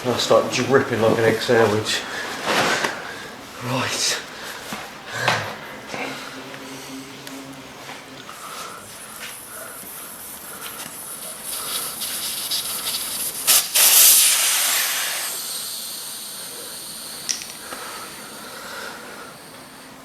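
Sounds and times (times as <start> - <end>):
air hissing out of inner tube: 8.3 - 20.0
sharp clicks: 17.2 - 17.8.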